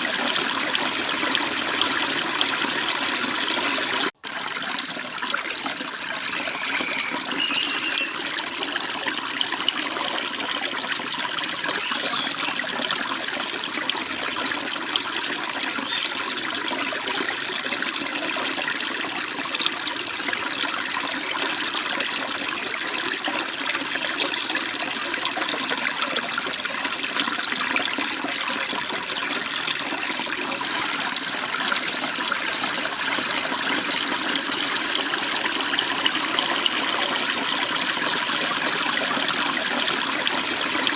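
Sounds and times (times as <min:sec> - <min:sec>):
bird chirps: 0:06.3 - 0:08.2, 0:11.8 - 0:12.4.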